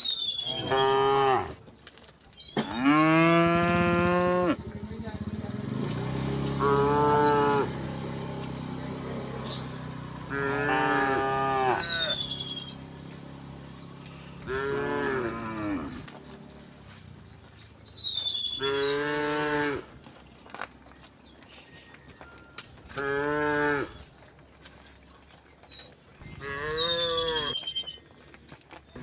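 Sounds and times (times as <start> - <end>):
descending bird whistles: 0.0 - 0.8, 11.4 - 13.0, 17.5 - 19.0, 26.3 - 28.0
cows mooing: 0.4 - 1.6, 2.6 - 17.1, 18.2 - 20.1, 22.2 - 24.1, 26.3 - 27.7.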